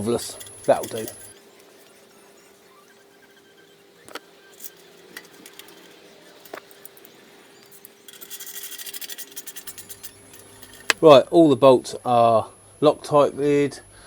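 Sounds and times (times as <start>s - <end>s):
hand tools clicking and knocking: 0.0s - 1.4s, 4.1s - 11.0s
rapid ratchet clicking: 0.0s - 1.5s, 4.5s - 11.0s.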